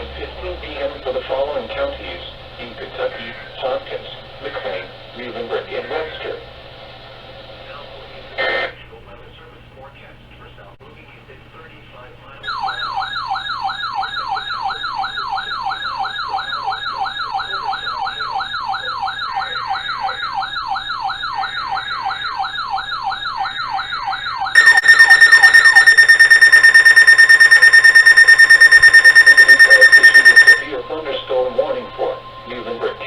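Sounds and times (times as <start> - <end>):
electronic siren yelp: 12.4 - 30.8
loud pulsing high tone: 24.6 - 30.8.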